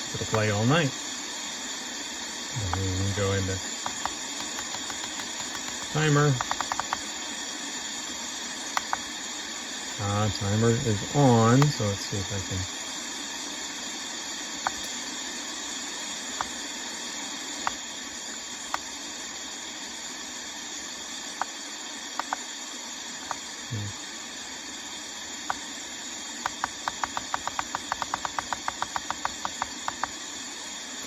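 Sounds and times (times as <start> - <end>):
white noise hiss from speaker: 0.0 - 31.0
button ticks: 3.9 - 7.0, 8.8 - 9.0.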